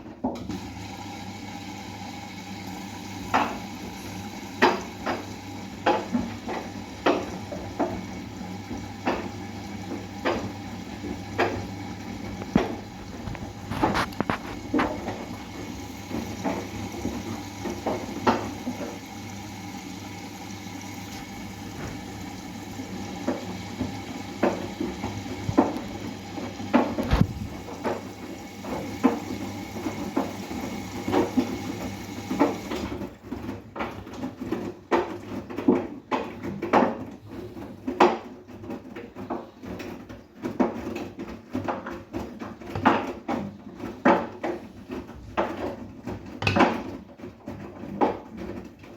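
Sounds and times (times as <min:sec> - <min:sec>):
washing machine motor hum: 0:00.0 - 0:48.9
laundry knocking in drum: 0:08.9 - 0:15.3.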